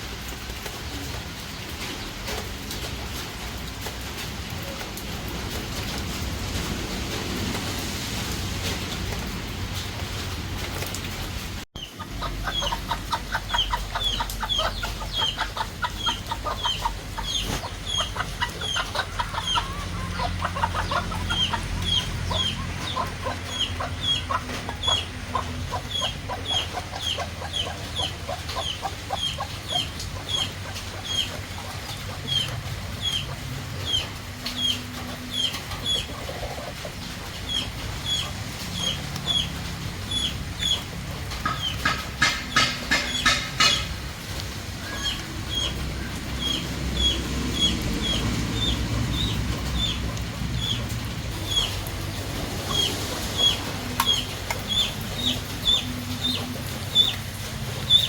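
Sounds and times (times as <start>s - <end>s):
chickens clucking: 11.8s - 58.0s
chicks peeping: 11.8s - 58.0s.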